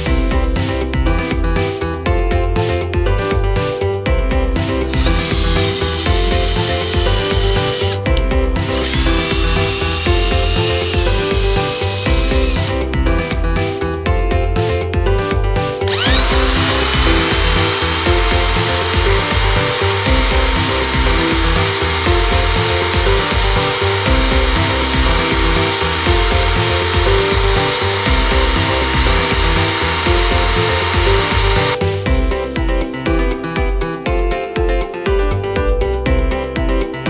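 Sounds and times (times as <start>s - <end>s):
background music with steady beat: 0.0s - 37.0s
electric motor whining: 4.9s - 12.8s, 15.9s - 31.8s.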